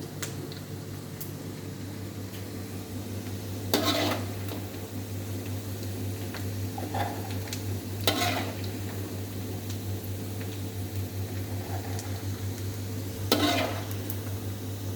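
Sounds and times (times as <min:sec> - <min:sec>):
metal utensil scraping a pan: 0:03.7 - 0:04.3, 0:06.8 - 0:07.4, 0:08.1 - 0:08.6, 0:13.3 - 0:13.9.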